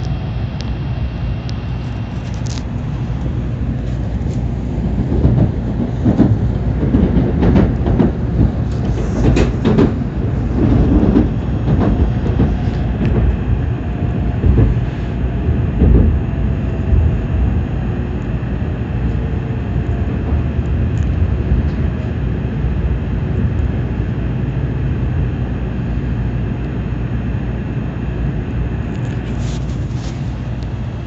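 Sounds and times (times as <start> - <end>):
train low rumble: 0.0 - 31.0
wheels clattering on track: 2.2 - 24.2.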